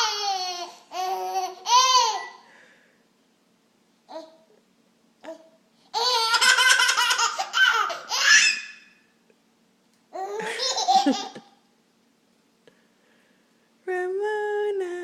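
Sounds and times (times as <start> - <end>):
baby laughing: 0.0 - 2.4, 5.9 - 8.9, 10.1 - 11.6.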